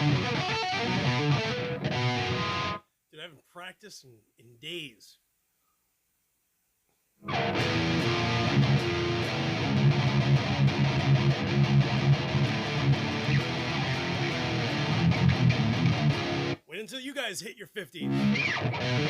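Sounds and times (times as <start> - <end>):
guitar strumming chords: 0.0 - 2.8, 7.2 - 16.6, 18.0 - 19.0.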